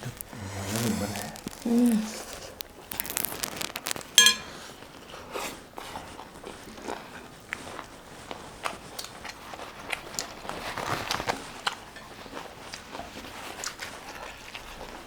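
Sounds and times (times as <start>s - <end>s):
small clicks and rustles: 0.0s - 5.1s, 8.3s - 15.0s
ringing clink of a dish: 4.2s - 4.6s
tableware clattering: 4.2s - 4.7s.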